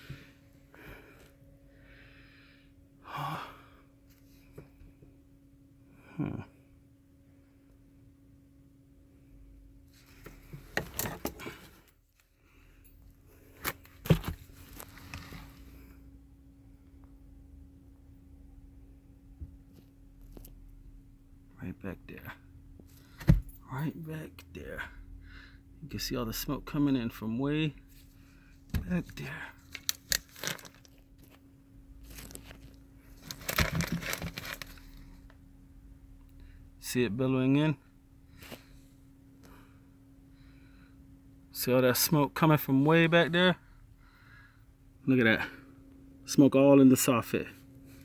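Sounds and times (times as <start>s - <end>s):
faint steady hum: 0.0s - 48.0s
crackling and rustling: 32.0s - 35.4s.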